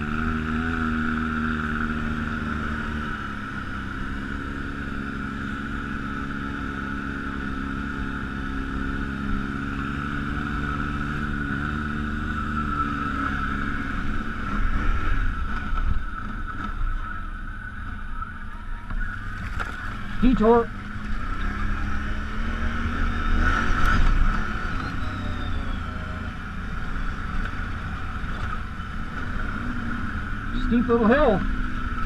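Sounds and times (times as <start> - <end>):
atv engine running: 0.0 - 32.0
high whine: 10.2 - 32.0.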